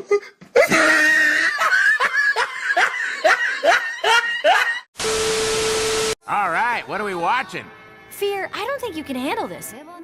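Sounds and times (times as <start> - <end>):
person laughing hard: 0.0 - 4.9.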